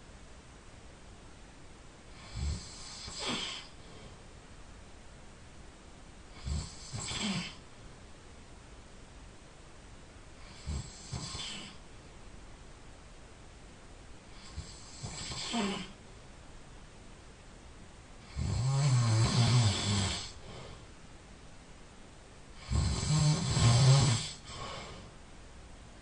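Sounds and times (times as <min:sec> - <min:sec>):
person snoring: 0:02.1 - 0:04.1, 0:06.4 - 0:07.6, 0:10.5 - 0:11.8, 0:14.4 - 0:16.0, 0:18.2 - 0:20.8, 0:22.6 - 0:25.1.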